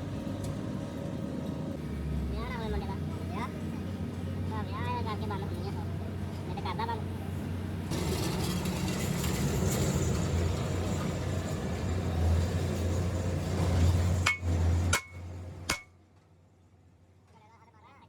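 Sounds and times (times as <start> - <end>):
machine humming and rattling: 7.8 - 15.9.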